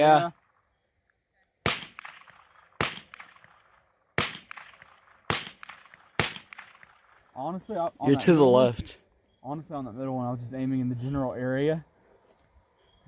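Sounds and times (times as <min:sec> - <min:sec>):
rifle shots with echo: 0:01.6 - 0:07.2.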